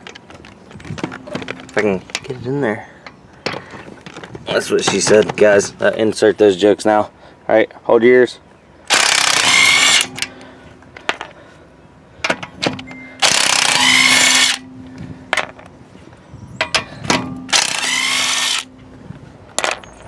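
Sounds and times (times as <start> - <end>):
impact wrench hammering lug nuts: 8.9 - 10.3, 12.2 - 14.6, 16.6 - 18.7.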